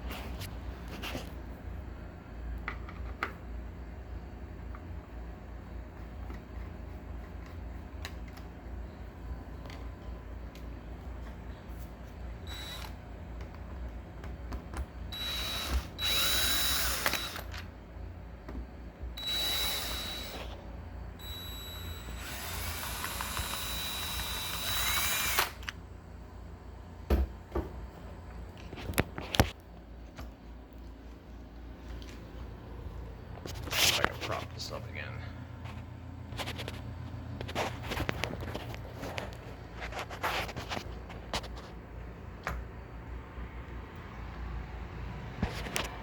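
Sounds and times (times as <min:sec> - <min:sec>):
power drill running: 0:12.4 - 0:13.0, 0:15.1 - 0:17.6, 0:19.2 - 0:20.6, 0:21.2 - 0:25.8.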